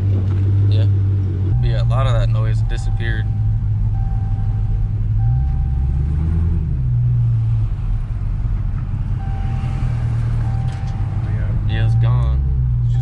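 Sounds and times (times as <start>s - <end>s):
car engine rumbling: 0.0s - 13.0s.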